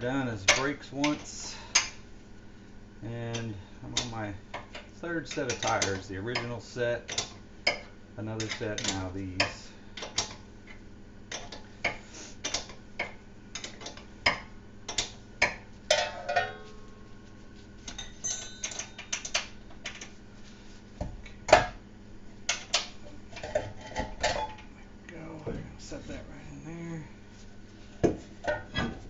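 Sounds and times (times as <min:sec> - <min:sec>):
metal tools clinking: 0:15.9 - 0:17.0, 0:17.9 - 0:19.4.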